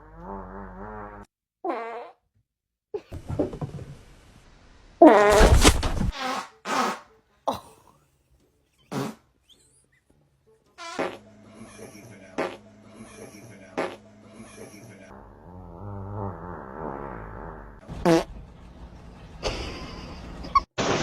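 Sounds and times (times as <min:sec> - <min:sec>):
fart sounds: 0:00.0 - 0:02.2, 0:05.0 - 0:07.1, 0:08.9 - 0:09.3, 0:10.8 - 0:11.2, 0:12.4 - 0:12.6, 0:13.8 - 0:14.0, 0:15.4 - 0:18.3.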